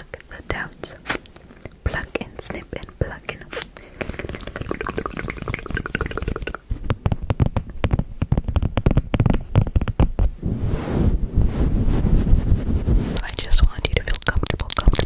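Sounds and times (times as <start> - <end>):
crisp wet clicks and taps: 13.2 - 15.0.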